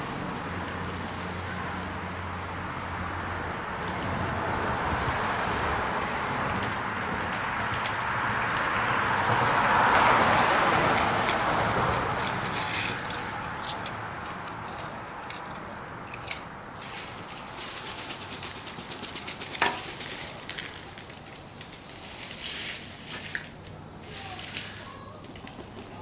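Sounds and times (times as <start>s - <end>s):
dry tinder rustling: 10.2s - 26.0s
small crackles: 19.4s - 26.0s.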